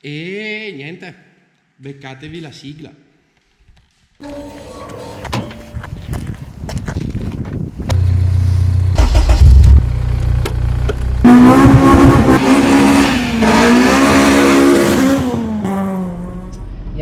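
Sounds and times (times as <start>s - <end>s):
deep engine drone: 7.9s - 17.0s
car engine revving hard: 11.2s - 16.6s.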